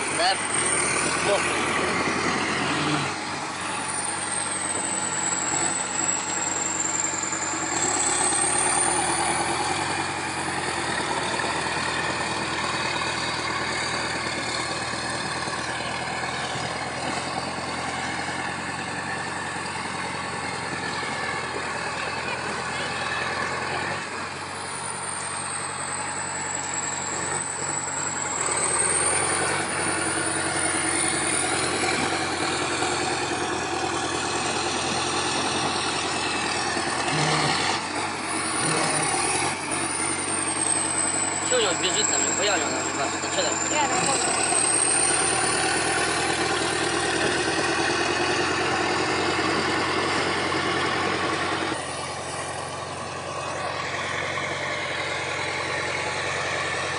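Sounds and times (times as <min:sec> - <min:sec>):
heavy diesel engine running: 0:00.0 - 0:56.9.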